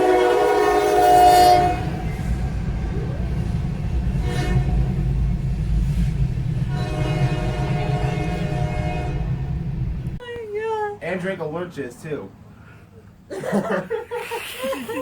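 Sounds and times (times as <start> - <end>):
horn sounding a chord: 0.0 - 5.2, 6.6 - 9.9
low rumble: 1.4 - 10.2.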